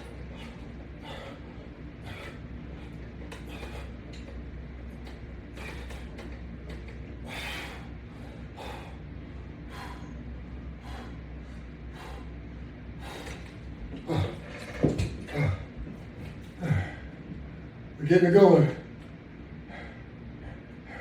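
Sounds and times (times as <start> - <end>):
low steady hum: 0.0 - 21.0
person breathing hard: 0.2 - 4.0, 7.2 - 14.5, 16.5 - 17.2, 19.6 - 21.0.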